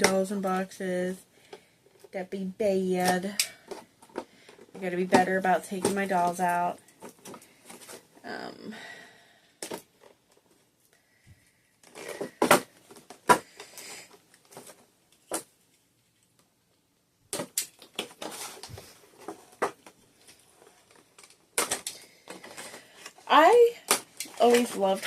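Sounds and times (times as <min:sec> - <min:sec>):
cardboard and plastic crinkling: 0:17.4 - 0:25.0.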